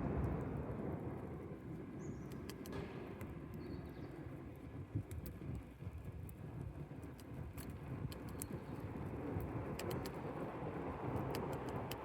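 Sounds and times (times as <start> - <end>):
campfire wood crackling and popping: 0.0 - 12.0
fire low rumble: 0.0 - 12.0.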